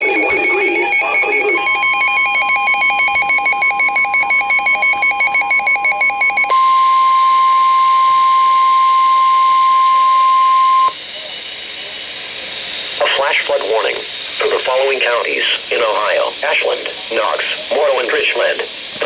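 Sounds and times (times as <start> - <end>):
warbling pulsing electronic tones: 0.0 - 3.8
steady alarm tone: 0.0 - 11.0.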